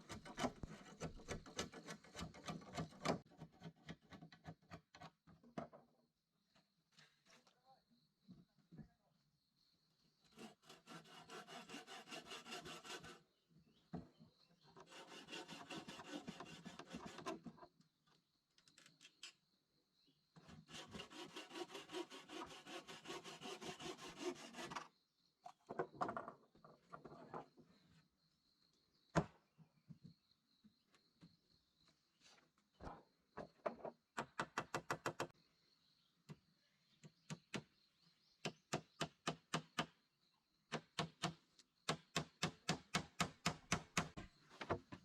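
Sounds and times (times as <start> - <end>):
hand saw rasping through wood: 0.0 - 3.2, 10.3 - 13.2, 14.8 - 17.5, 20.6 - 24.8.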